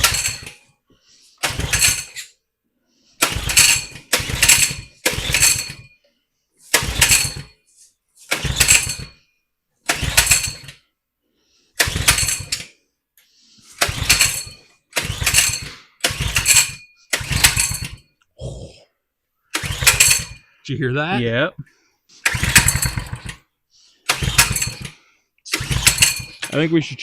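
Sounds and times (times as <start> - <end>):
small engine pull-start cranking: 0.0 - 0.7, 1.4 - 2.4, 3.2 - 5.9, 6.6 - 7.6, 8.2 - 9.2, 9.8 - 10.9, 11.8 - 12.8, 13.6 - 18.1, 19.5 - 20.6, 22.2 - 26.7.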